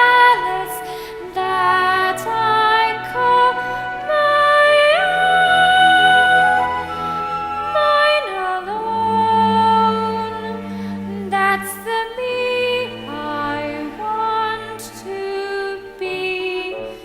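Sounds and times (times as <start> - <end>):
instrumental accompaniment: 0.0 - 17.0.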